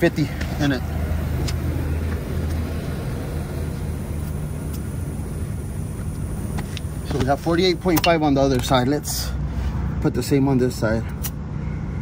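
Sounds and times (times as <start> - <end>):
truck engine idling: 0.0 - 9.6.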